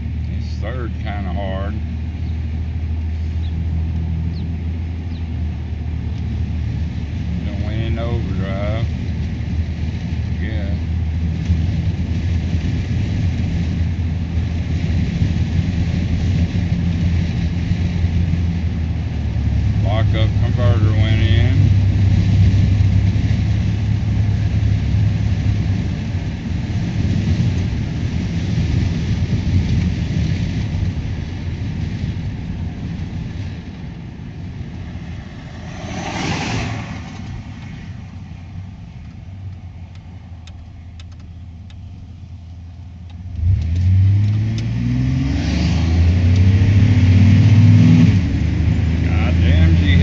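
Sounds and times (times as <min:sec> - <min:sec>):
car engine: 0:00.0 - 0:50.0
road noise: 0:00.0 - 0:50.0
brief whoosh: 0:34.9 - 0:38.0.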